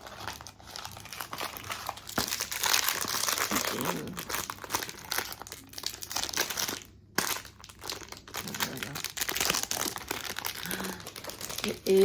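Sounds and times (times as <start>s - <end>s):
packaging crinkling and tearing: 0.0s - 12.0s.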